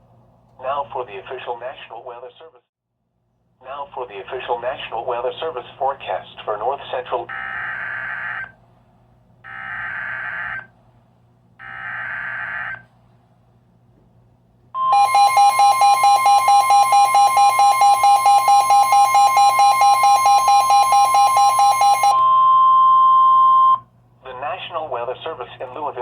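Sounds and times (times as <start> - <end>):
steady warning alarm tone: 14.8 - 23.8
fast-pulsing electronic beeping: 14.9 - 22.1.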